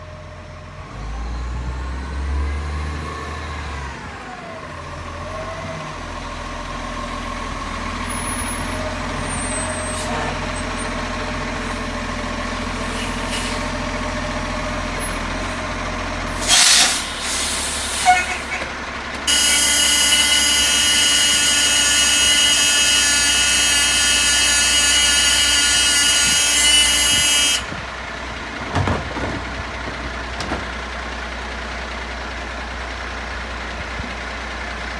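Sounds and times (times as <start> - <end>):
garbage truck engine running: 0.0 - 34.9
air brake hisses: 12.8 - 13.9, 16.3 - 18.7.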